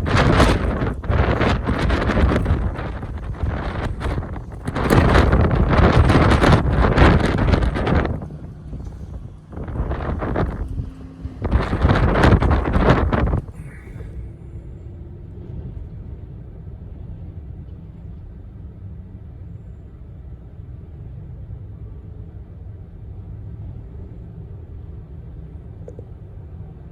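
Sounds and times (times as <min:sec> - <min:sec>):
low steady rumble: 0:00.0 - 0:26.9.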